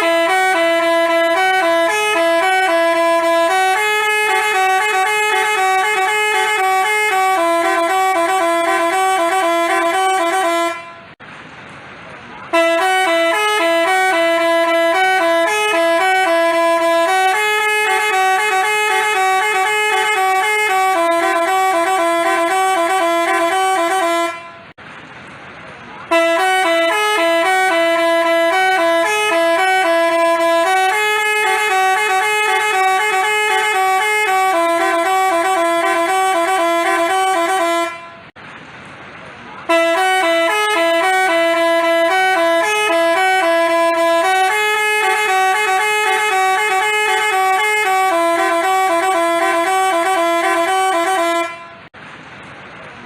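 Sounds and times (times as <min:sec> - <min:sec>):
multi-tone bus horn melody: 0:00.0 - 0:11.2, 0:12.4 - 0:24.8, 0:26.0 - 0:38.4, 0:39.6 - 0:52.0.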